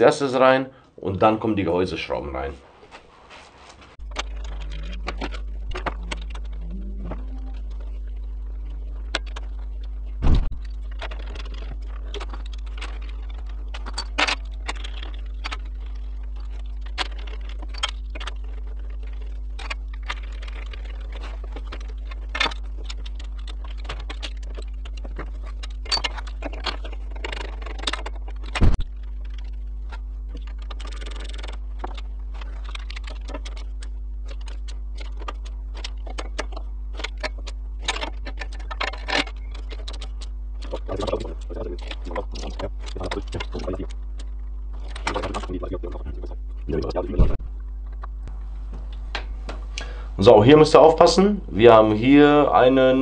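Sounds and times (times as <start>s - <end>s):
steady low hum: 0.0s - 53.0s
loud knock: 10.2s - 10.6s.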